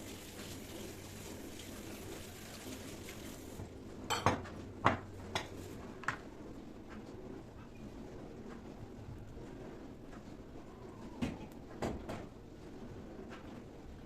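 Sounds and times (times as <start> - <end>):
kitchenware clinking: 4.1 - 4.5.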